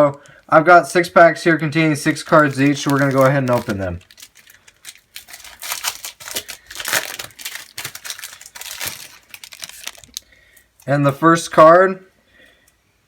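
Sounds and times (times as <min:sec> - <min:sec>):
foil wrapper tearing and crinkling: 0:02.0 - 0:10.4.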